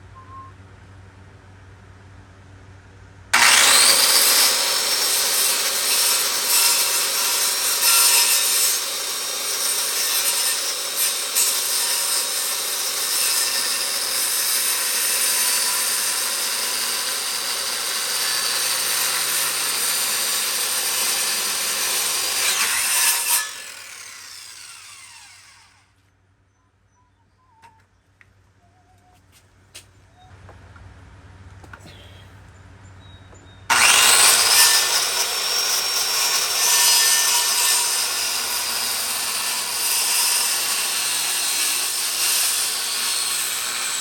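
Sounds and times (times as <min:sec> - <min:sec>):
electric saw cutting wood: 0:03.4 - 0:25.8, 0:33.7 - 0:44.0.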